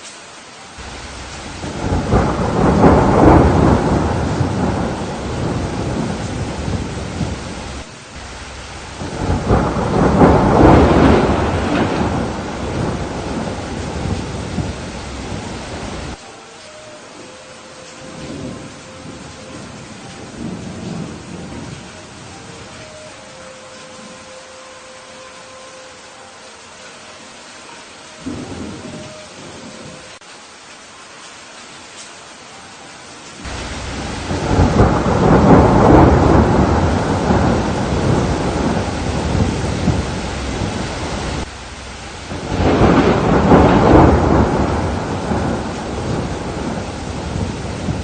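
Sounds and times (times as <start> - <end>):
steady rain: 0.0 - 48.0
thunder rolling: 0.8 - 16.2, 18.0 - 23.0, 28.2 - 30.0, 33.4 - 48.0.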